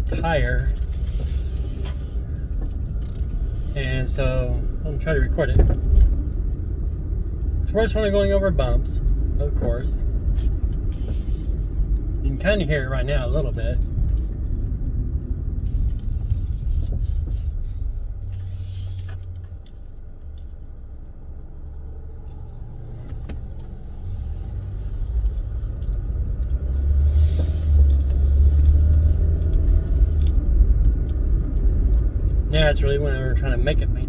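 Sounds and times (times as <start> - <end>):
car engine and road rumble: 0.0 - 34.0.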